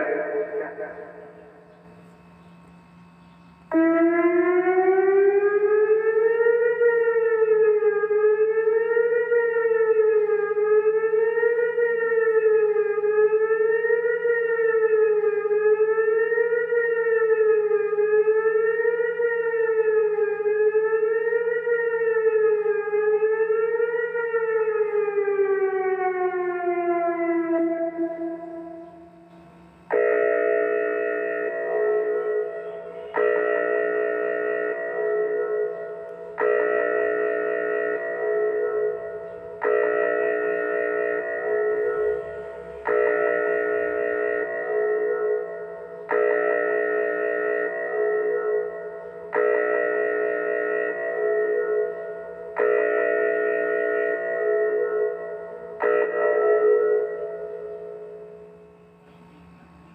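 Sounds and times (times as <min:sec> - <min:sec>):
electronic warning siren wailing: 0:00.0 - 0:59.9
multi-pitch air horn tone: 0:28.2 - 0:59.9.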